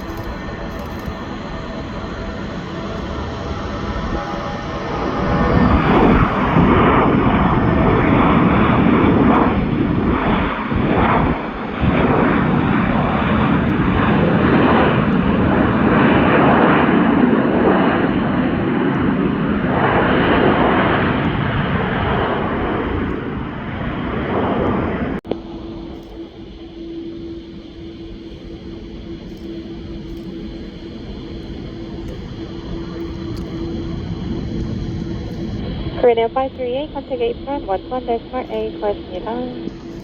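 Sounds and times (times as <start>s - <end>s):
jet airliner engines roaring: 0.0s - 40.0s.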